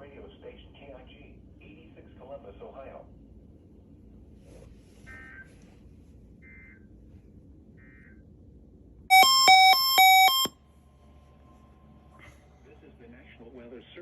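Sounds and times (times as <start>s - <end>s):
two-pitch alert beep: 9.1s - 10.5s.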